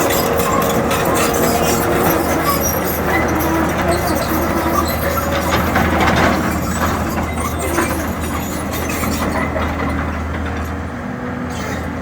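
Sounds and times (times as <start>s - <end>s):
excavator diesel engine running: 0.0s - 12.0s.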